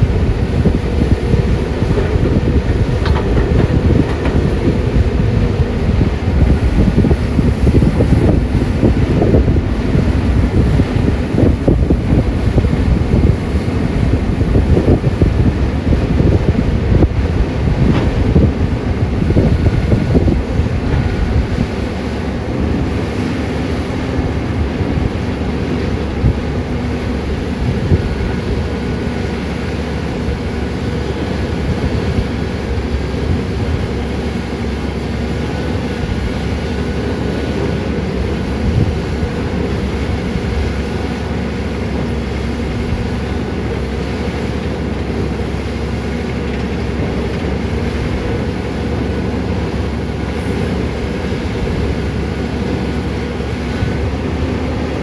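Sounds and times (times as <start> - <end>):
excavator diesel engine running: 0.0 - 55.0
short knocks: 0.5 - 13.6.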